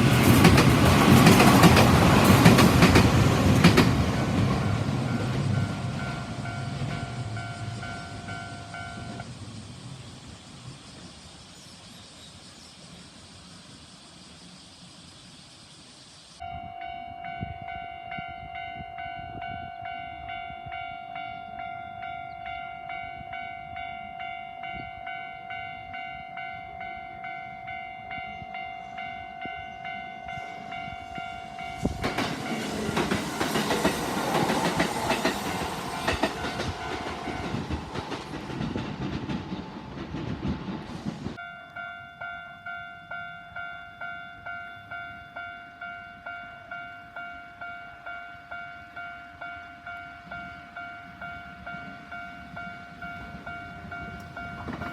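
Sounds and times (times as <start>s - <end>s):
train rushing past: 0.0s - 15.1s, 29.7s - 54.9s
level crossing warning bell: 2.5s - 9.3s, 16.4s - 35.2s, 41.4s - 54.9s.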